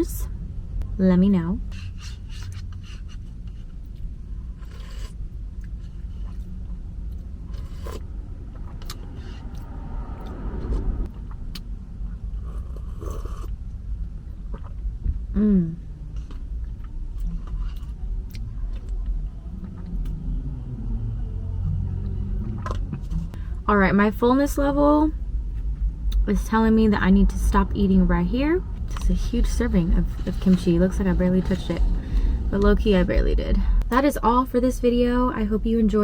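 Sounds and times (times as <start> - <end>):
steady low rumble: 0.0 - 36.0
chewing: 2.0 - 10.4, 16.0 - 20.2
short falling hum: 8.1 - 11.3.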